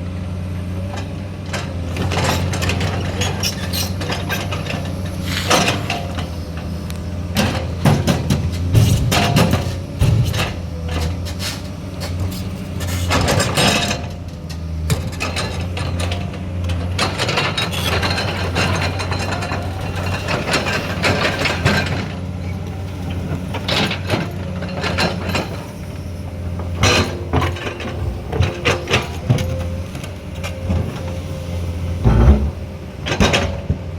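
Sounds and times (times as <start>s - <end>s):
excavator diesel engine running: 0.0s - 33.9s
knocks and clatter: 7.4s - 11.3s, 26.6s - 31.0s, 32.0s - 33.9s.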